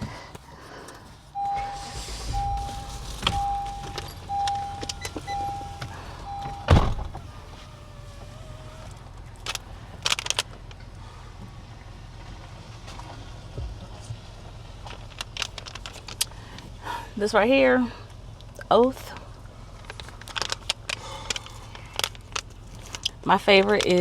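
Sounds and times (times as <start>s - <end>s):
rustling: 0.0s - 10.5s
car warning chime beeping: 1.3s - 8.9s
loud thump: 1.4s - 7.6s
clicks: 1.4s - 10.5s.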